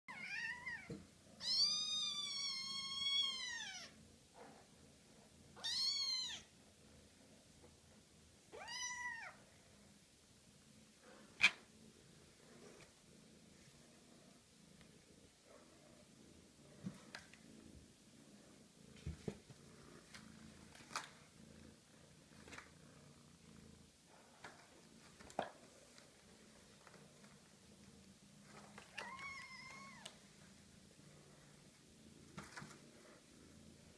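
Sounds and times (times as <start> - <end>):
kitten meowing: 0.1 - 3.9, 5.6 - 6.5, 8.5 - 9.4, 28.9 - 30.1
kitten purring: 0.1 - 33.9.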